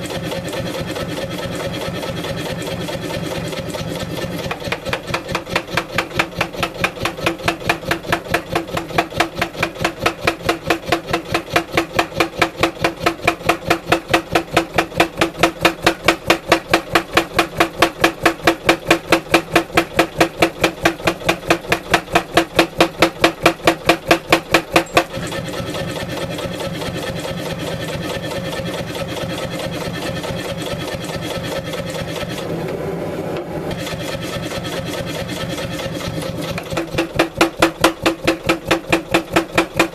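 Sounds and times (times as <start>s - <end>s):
power hammer striking metal: 3.8s - 32.5s, 33.7s - 39.9s.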